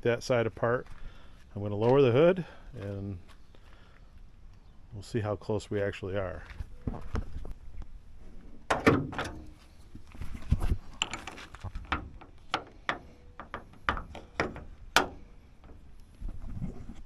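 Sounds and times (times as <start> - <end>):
metallic latch clicks and clacks: 8.7 - 9.6, 11.0 - 15.8
hood knocking with short ring: 11.0 - 15.9.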